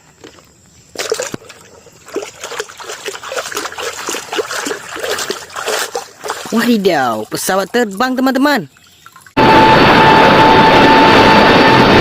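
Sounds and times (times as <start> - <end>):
water splashing and trickling: 0.3 - 9.4.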